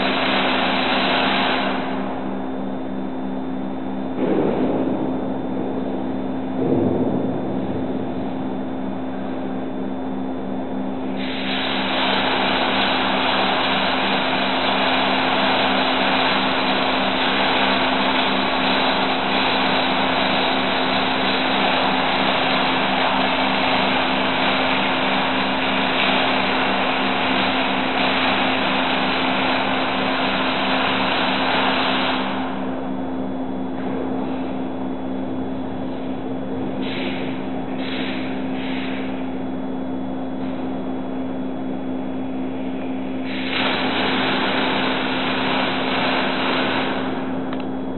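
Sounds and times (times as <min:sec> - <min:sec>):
arc welding crackling hiss: 0:00.0 - 0:02.2, 0:11.0 - 0:32.8, 0:36.8 - 0:39.2, 0:43.2 - 0:47.4
low machine hum: 0:00.0 - 0:47.9.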